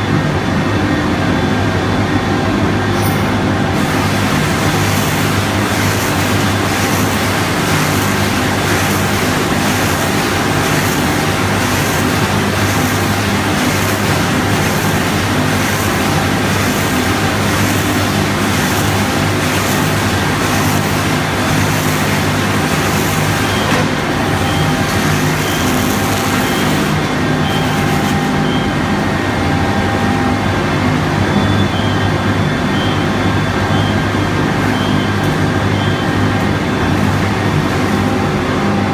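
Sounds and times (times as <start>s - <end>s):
baler machine droning: 3.0s - 38.9s
short high beeps: 23.4s - 28.8s.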